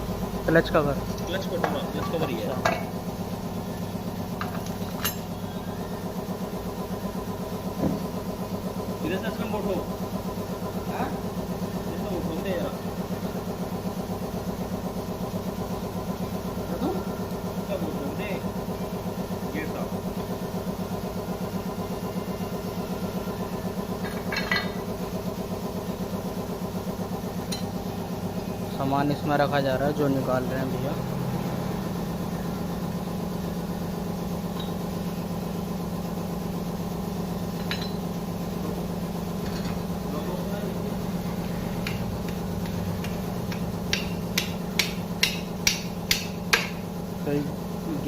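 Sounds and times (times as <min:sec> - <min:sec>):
small engine idling: 0:00.0 - 0:48.0
metallic clink: 0:04.4 - 0:05.4
hammer tapping on metal: 0:41.8 - 0:46.8.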